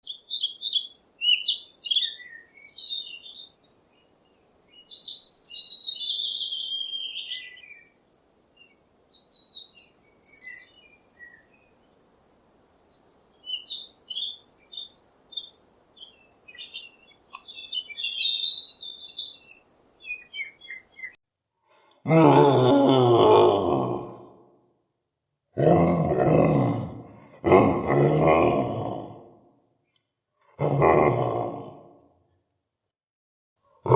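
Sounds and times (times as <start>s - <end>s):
songbird chirping and warbling: 0.0s - 21.2s.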